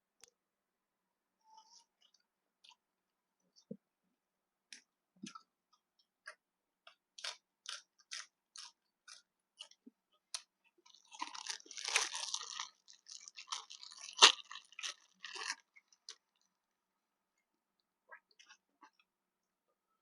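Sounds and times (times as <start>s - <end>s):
person chewing crunchy food: 6.3s - 16.5s.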